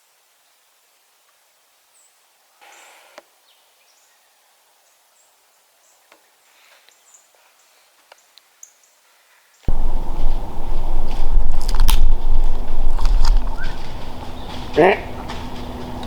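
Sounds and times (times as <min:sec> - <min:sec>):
faint rustle: 0:06.4 - 0:16.0.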